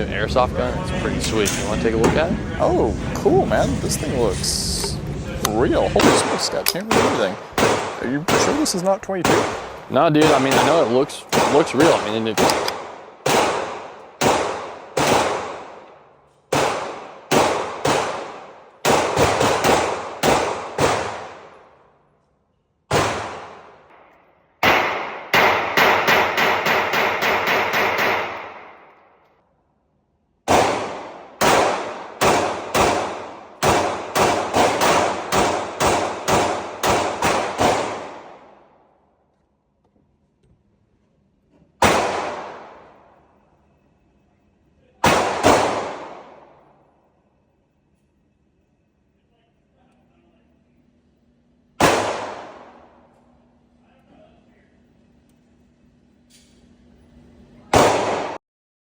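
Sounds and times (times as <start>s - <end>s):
automatic gunfire burst: 6.0s - 15.7s, 16.5s - 21.5s, 24.6s - 28.7s, 30.5s - 38.4s, 41.8s - 42.8s, 45.0s - 46.4s
echoing gunshots: 6.0s - 21.9s, 22.9s - 29.2s, 30.4s - 38.9s, 41.8s - 43.2s, 45.0s - 46.8s, 51.8s - 53.1s, 57.7s - 58.4s.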